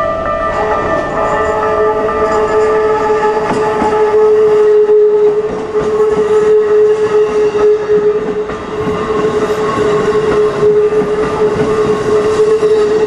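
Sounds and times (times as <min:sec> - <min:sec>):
level crossing warning bell: 0:00.0 - 0:06.6
train wheels clattering on rails: 0:00.0 - 0:13.0.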